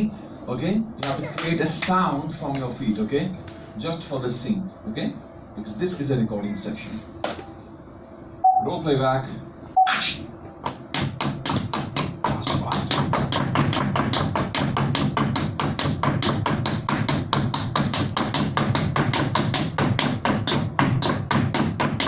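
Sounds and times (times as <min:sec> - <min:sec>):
tap dance shoes tapping: 0:10.6 - 0:22.0.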